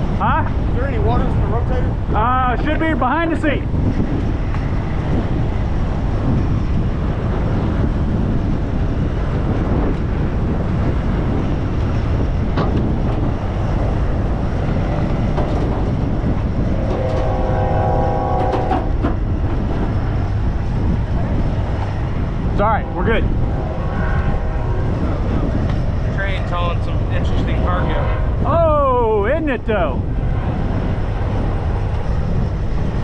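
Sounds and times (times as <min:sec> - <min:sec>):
freight train rumbling past: 0:00.0 - 0:33.0
wind buffeting microphone: 0:00.0 - 0:33.0
steady pitched tone: 0:16.0 - 0:30.5.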